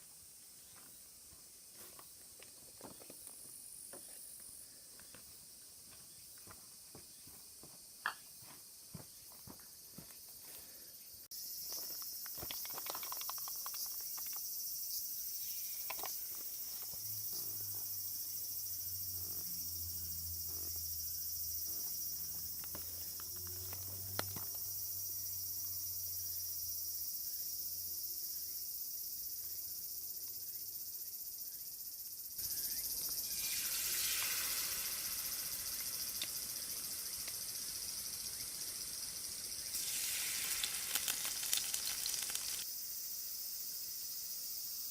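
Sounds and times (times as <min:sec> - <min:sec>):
insects chirping: 0:00.0 - 0:44.9
hot oil sizzling: 0:33.2 - 0:42.7.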